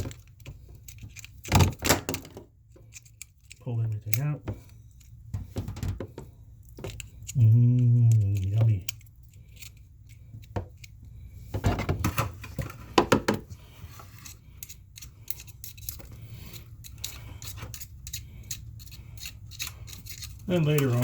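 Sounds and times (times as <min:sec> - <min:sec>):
metal hook scraping a spring: 0:08.1 - 0:11.0, 0:14.0 - 0:21.0.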